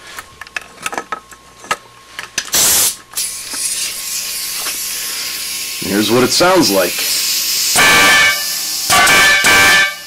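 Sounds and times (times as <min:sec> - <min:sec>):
compressed air blast: 0:02.5 - 0:05.9, 0:06.7 - 0:10.0
air hissing from hose: 0:02.5 - 0:09.7.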